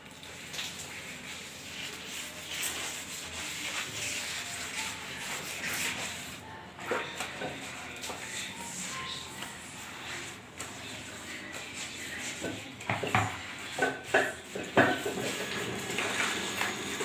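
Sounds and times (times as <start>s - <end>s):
scrubbing a wet tiled floor: 0.0s - 17.0s.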